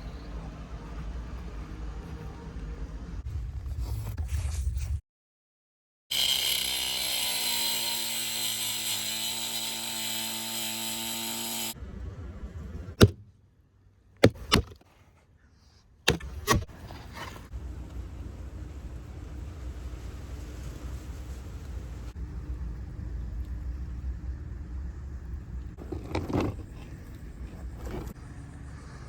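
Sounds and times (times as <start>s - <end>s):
power tool motor running: 6.1s - 11.8s
sharp knocks: 13.0s - 13.3s.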